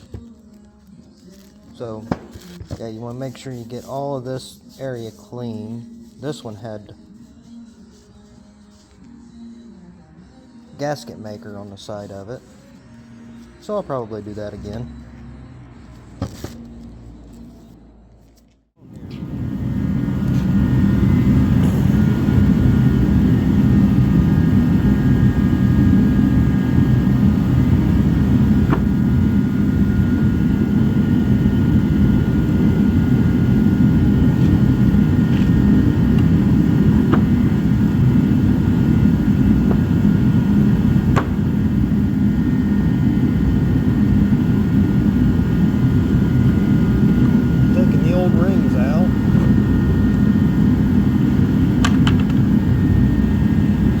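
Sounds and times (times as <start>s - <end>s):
machine humming: 18.9s - 54.0s.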